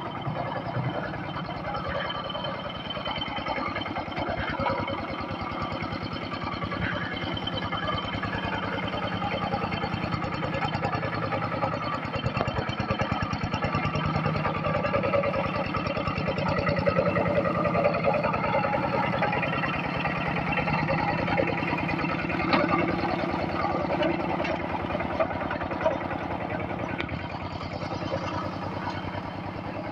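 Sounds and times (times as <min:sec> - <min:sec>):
tractor diesel engine chugging: 0:00.0 - 0:29.9.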